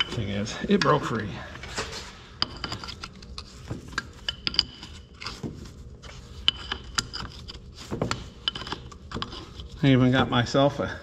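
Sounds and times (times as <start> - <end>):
wrench and steel parts clinking: 3.9 - 5.1.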